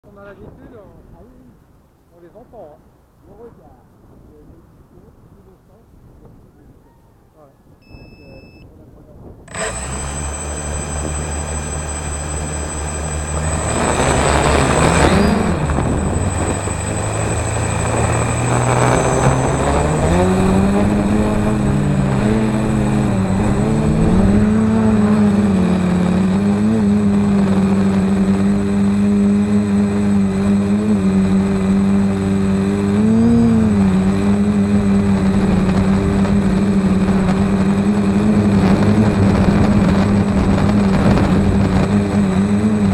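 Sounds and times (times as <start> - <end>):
drone propeller hum: 9.5 - 42.9.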